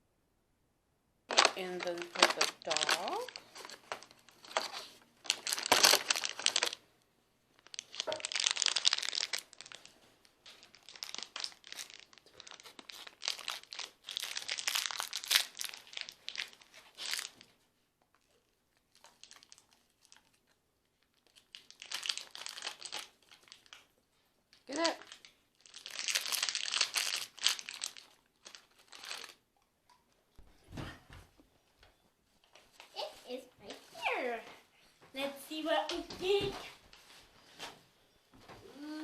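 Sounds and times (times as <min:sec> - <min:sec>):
packaging crinkling and tearing: 0:01.3 - 0:06.8, 0:07.6 - 0:23.9, 0:24.5 - 0:29.4.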